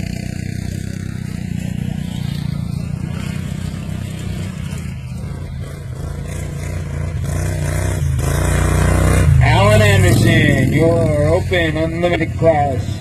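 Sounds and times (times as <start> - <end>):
racing lawn mower engines revving: 0.0 - 13.0.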